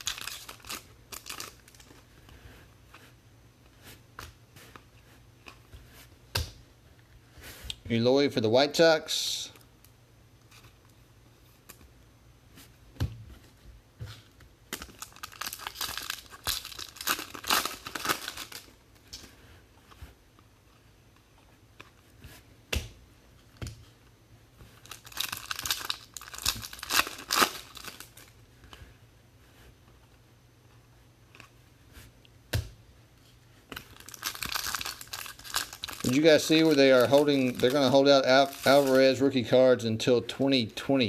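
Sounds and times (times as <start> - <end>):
foil wrappers tearing and crinkling: 0.0 - 2.0, 14.8 - 18.8, 24.8 - 28.4, 33.8 - 39.2.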